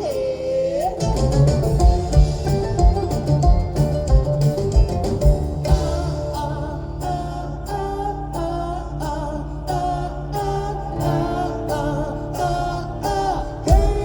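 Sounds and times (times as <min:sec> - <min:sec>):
wordless sung vocals: 0:00.0 - 0:03.8, 0:05.4 - 0:14.0
live hard rock band: 0:01.1 - 0:06.6.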